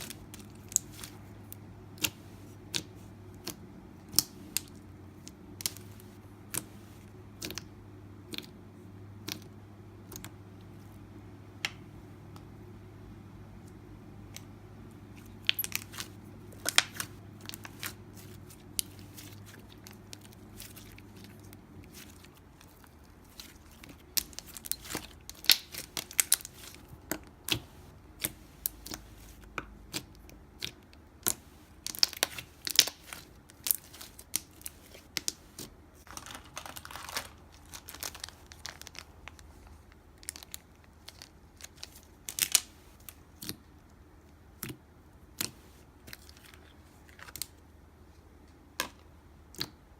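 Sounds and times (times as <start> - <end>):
low steady hum: 0.0 - 49.9
slime crackling and popping: 15.2 - 43.6.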